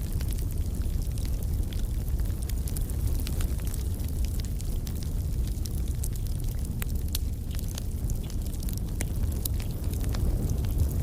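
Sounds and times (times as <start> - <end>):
wood fire crackling: 0.0 - 11.0.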